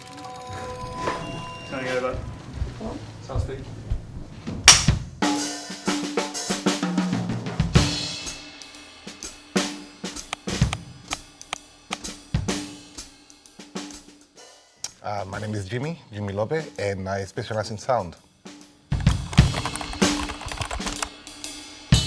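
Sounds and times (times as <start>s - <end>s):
hi-hat hits: 4.7s - 5.0s
snare drum hits: 4.7s - 5.1s.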